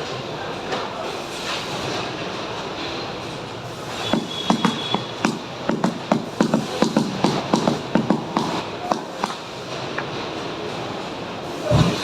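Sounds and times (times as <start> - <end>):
steady machinery noise: 0.0 - 12.0
sharp mechanical knocks: 4.1 - 9.4.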